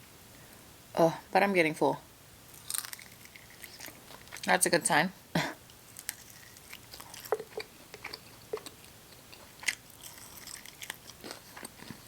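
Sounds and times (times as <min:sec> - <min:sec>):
crisp bites: 0:02.5 - 0:04.5, 0:05.9 - 0:12.0
wet chewing and mouth smacks: 0:02.5 - 0:04.5, 0:05.9 - 0:12.0.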